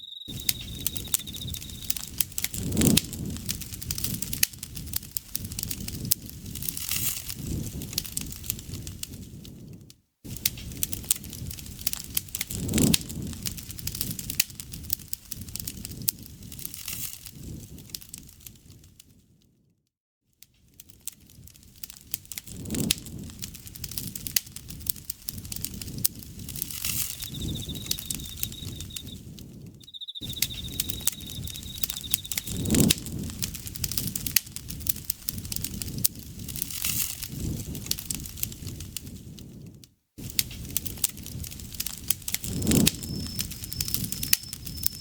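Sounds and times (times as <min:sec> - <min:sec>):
higher insect trilling: 0:00.0 - 0:02.1, 0:27.1 - 0:29.2, 0:29.8 - 0:32.6, 0:42.5 - 0:45.0
insect trilling: 0:00.0 - 0:02.2, 0:26.9 - 0:29.2, 0:29.8 - 0:32.8, 0:42.4 - 0:45.0
campfire crackling and popping: 0:00.2 - 0:18.9, 0:20.8 - 0:45.0
soft rush of flames: 0:00.3 - 0:18.4, 0:21.3 - 0:45.0.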